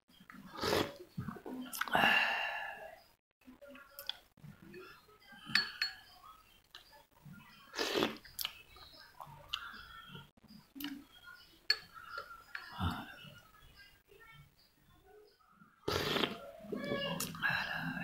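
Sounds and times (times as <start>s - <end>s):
spoon clinking against glass: 5.5s - 6.2s, 11.7s - 12.7s.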